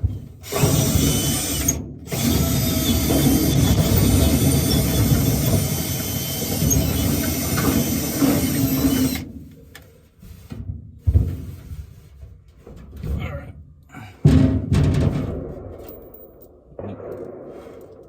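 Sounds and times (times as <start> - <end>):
power drill drilling: 0.4 - 9.3.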